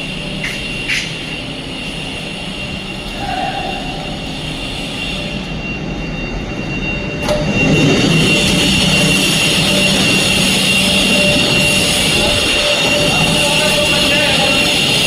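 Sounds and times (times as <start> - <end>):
continuous high-pitched tone: 0.0 - 15.0
machinery rumbling: 0.0 - 15.0.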